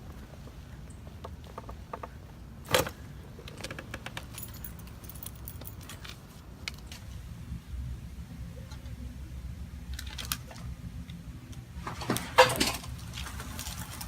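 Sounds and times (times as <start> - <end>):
light clicks and rustling: 3.4 - 7.2.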